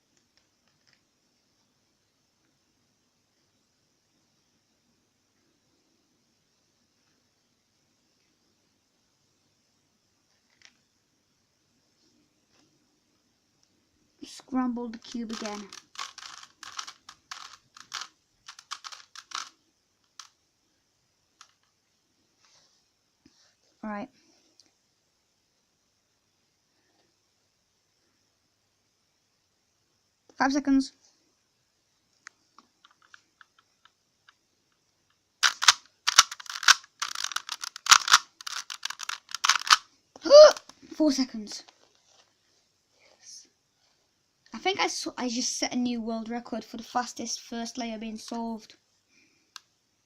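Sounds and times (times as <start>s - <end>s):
puzzle cube clicking: 15.0s - 19.5s, 20.1s - 20.3s, 35.4s - 40.7s.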